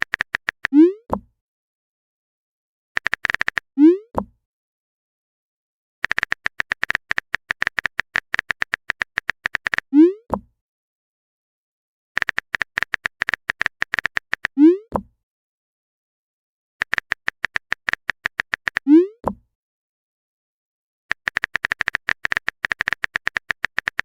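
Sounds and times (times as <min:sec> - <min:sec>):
phone keyboard typing clicks: 0:00.0 - 0:00.8, 0:03.0 - 0:04.3, 0:06.0 - 0:10.4, 0:12.2 - 0:14.6, 0:16.8 - 0:18.9, 0:21.1 - 0:24.0.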